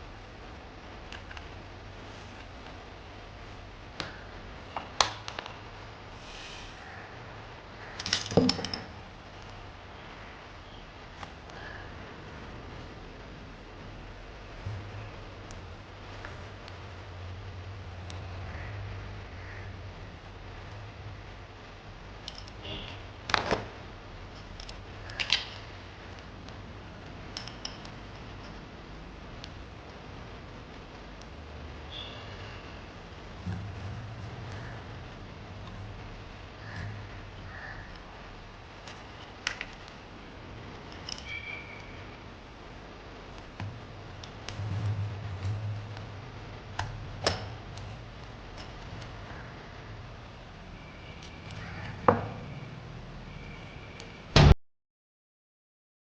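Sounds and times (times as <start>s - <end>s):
steady low hum: 0.0s - 53.4s
small parts clicking: 8.0s - 9.5s, 22.2s - 22.6s, 24.3s - 28.7s, 40.7s - 42.0s
small clicks and taps of tools: 24.4s - 26.6s, 27.3s - 28.6s
low hum: 40.6s - 50.9s.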